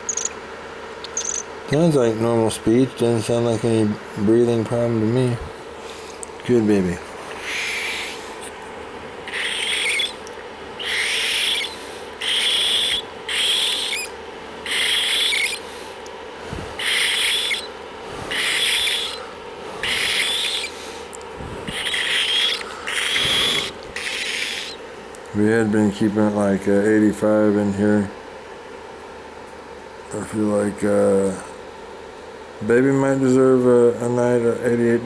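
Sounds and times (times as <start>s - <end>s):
bird chick raspy hissing calls: 0.0s - 0.3s, 1.0s - 1.5s, 7.1s - 8.6s, 9.2s - 24.9s.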